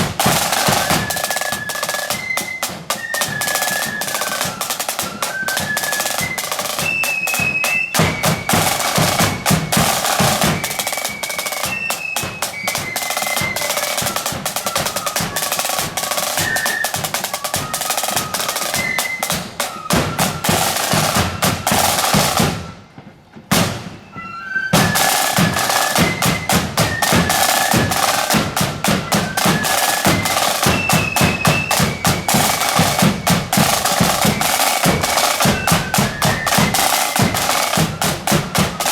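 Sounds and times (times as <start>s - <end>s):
snare and bass drum beats: 0.0s - 24.1s, 24.8s - 38.9s
flute melody: 0.0s - 38.9s.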